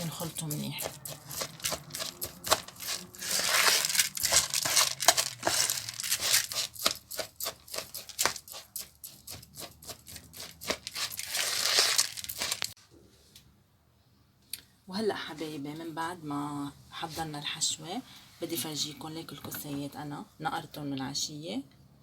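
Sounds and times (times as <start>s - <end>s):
rice and meat mixed in a bowl: 0.0s - 12.8s.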